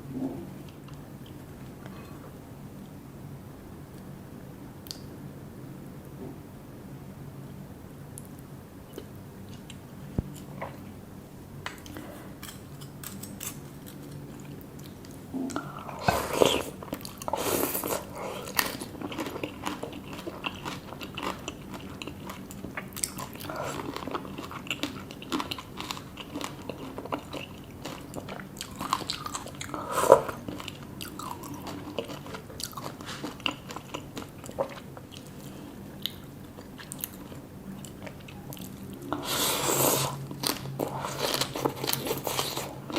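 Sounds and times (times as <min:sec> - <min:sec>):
person chewing crunchy food: 0:11.8 - 0:42.9.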